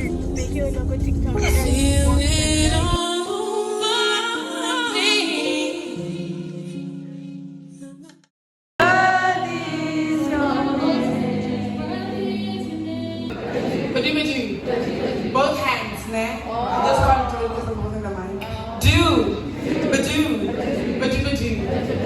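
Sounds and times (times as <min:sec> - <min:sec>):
music with singing voices: 0:00.0 - 0:13.4.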